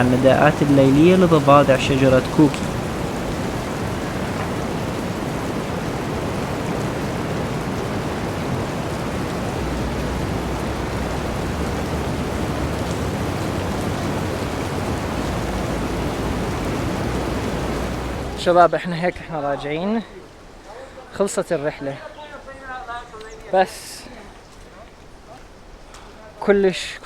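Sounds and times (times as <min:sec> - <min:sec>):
rush of falling water: 0:00.0 - 0:27.0
deep low rumble: 0:09.2 - 0:18.4.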